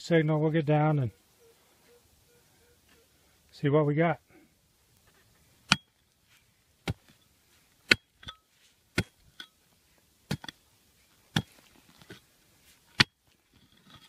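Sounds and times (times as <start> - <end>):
clicks of dirt and stones: 4.9 - 14.0
metal tool chopping hard ground: 6.8 - 7.2, 7.8 - 9.6, 10.3 - 10.6, 11.3 - 12.2, 12.9 - 13.2.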